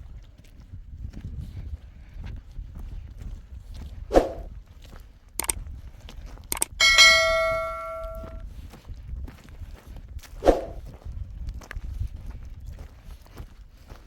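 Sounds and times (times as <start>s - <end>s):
sharp knocks: 6.6s - 8.4s
struck metal ringing like a bell: 6.6s - 8.4s.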